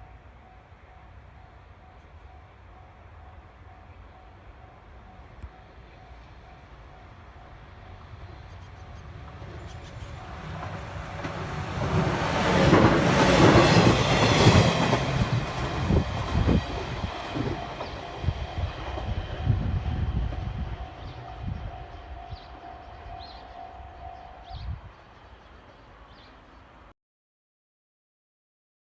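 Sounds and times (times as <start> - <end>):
rhythmic wheel clacks on rail joints: 8.2 - 24.0
train wheel running noise: 9.0 - 23.9.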